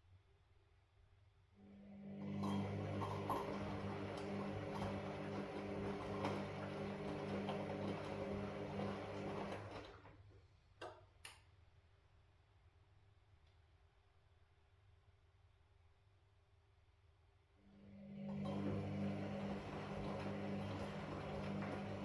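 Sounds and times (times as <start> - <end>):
washing machine drum humming: 2.2 - 10.1, 18.2 - 22.0.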